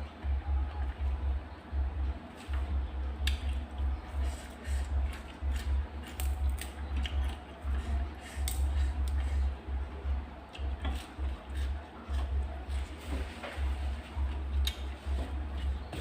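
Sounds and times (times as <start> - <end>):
person chewing: 3.2 - 9.4, 10.5 - 12.8.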